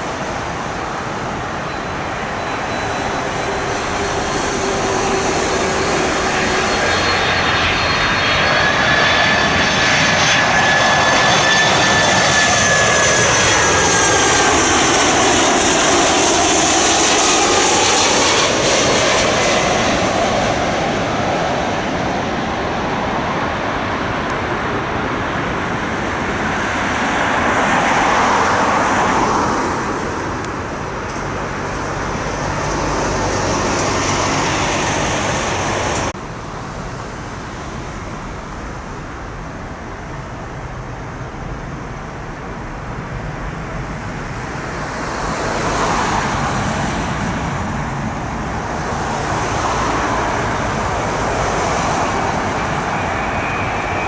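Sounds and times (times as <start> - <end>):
road traffic passing: 0.0 - 54.0.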